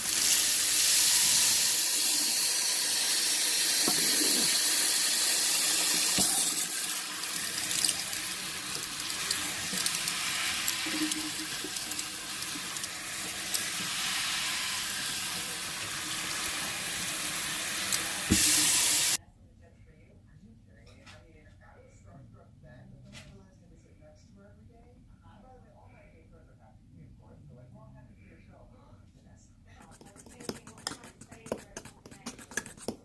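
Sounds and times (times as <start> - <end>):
tap running into a sink: 5.7 - 6.7, 17.9 - 19.2.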